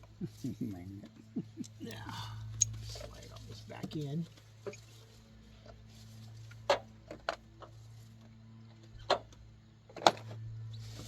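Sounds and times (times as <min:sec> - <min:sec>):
low hum: 0:00.0 - 0:11.0
engine parts clicking and knocking: 0:05.6 - 0:11.0.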